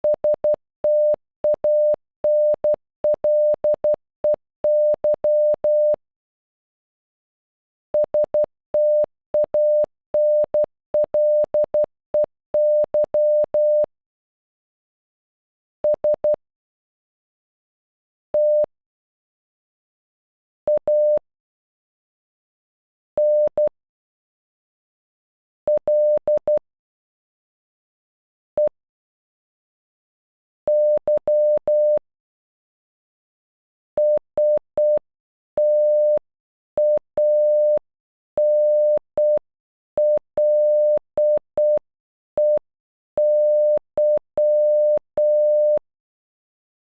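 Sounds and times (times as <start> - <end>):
morse code beeps: 0.1 - 4.0, 4.7 - 6.0, 8.0 - 13.9, 23.2 - 23.7, 30.7 - 32.0, 34.0 - 35.0, 35.6 - 36.2, 36.8 - 37.8, 38.4 - 39.4, 40.0 - 41.8, 42.4 - 42.6, 43.2 - 45.8.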